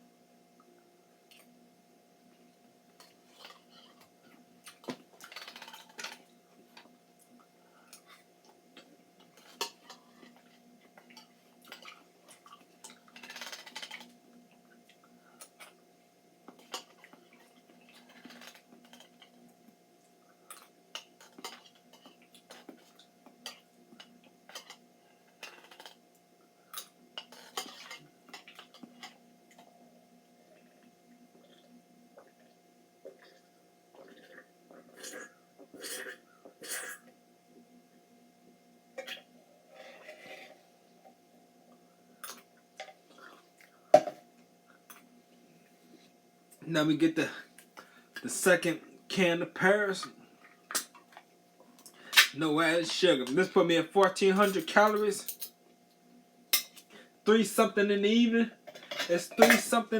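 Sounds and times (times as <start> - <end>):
wet eating sounds: 3.0 - 15.8, 25.4 - 26.0, 30.5 - 37.1
cutlery clinking and scraping: 27.3 - 29.1, 56.6 - 56.9, 58.7 - 59.7.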